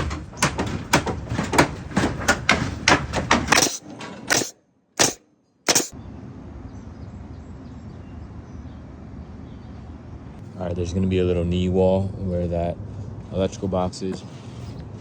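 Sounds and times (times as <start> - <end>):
hammer driving nails into wood: 0.0 - 6.0.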